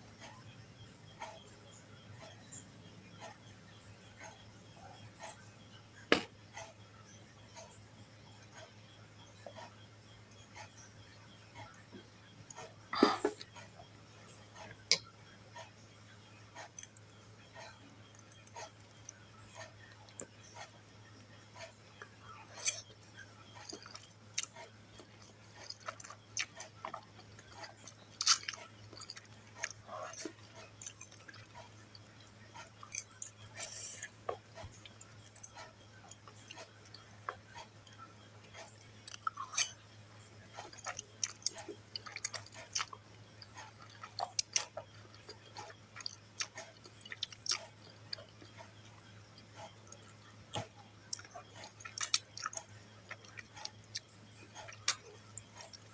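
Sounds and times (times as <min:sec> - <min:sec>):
steady low hum: 0:00.0 - 0:55.9
chewing noodles with mouth clicks: 0:00.1 - 0:55.9.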